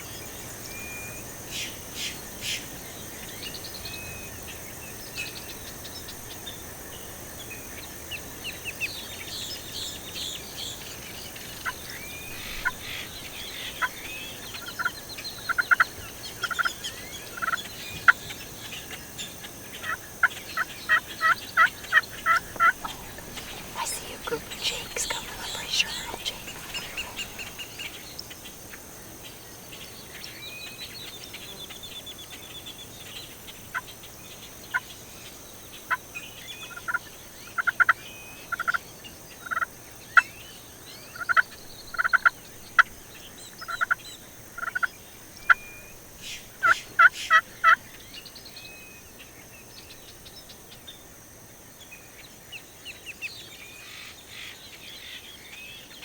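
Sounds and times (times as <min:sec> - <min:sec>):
songbirds chirping: 0:20.3 - 0:28.8
wild turkey yelping: 0:21.9 - 0:23.7.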